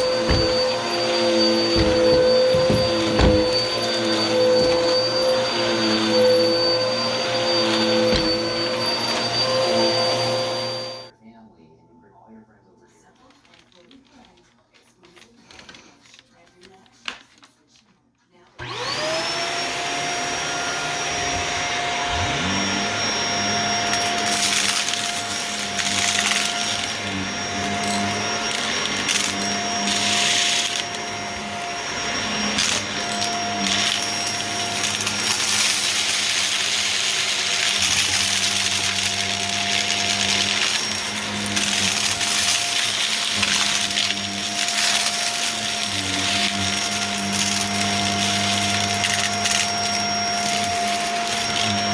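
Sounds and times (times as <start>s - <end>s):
grit crunching and rattling: 0.0s - 9.4s, 32.6s - 51.9s
vacuum cleaner motor whine: 0.0s - 11.1s, 18.6s - 51.9s.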